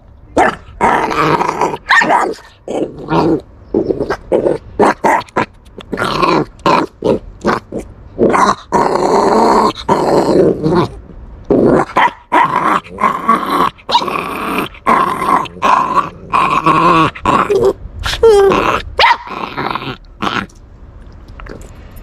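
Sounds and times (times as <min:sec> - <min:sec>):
puppy growling: 0:00.4 - 0:20.6.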